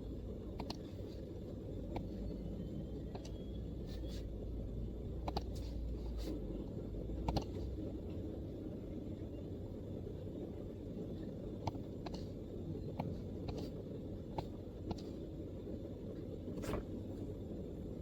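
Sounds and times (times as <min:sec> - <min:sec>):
low background rumble and hum: 0:00.0 - 0:18.0
laptop keyboard keystrokes: 0:00.6 - 0:00.8, 0:05.2 - 0:05.6, 0:07.2 - 0:07.5.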